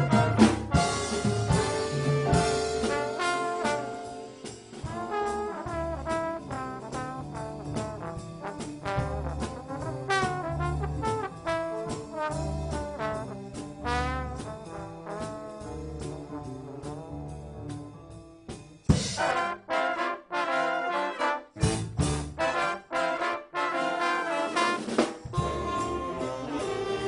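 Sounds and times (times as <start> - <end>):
drum kit steady beat: 0.0 - 16.5, 18.5 - 19.6, 21.6 - 22.8, 24.6 - 27.0
brass instruments playing melody: 0.0 - 17.9, 19.1 - 27.0.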